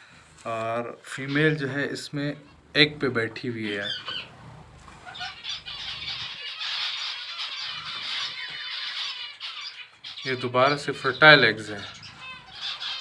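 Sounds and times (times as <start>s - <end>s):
lovebirds chirping and chattering: 0.0s - 13.0s.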